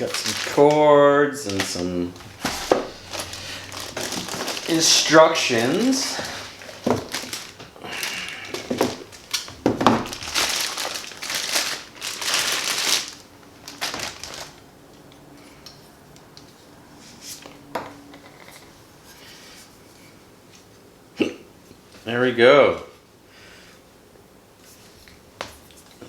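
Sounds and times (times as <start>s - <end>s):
packaging crinkling and rustling: 0.0s - 14.7s.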